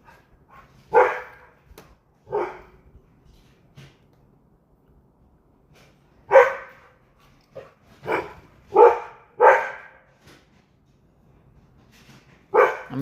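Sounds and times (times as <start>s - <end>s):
dog barking: 0.9s - 1.6s, 2.2s - 2.8s, 6.3s - 6.9s, 7.6s - 10.1s, 12.5s - 13.0s.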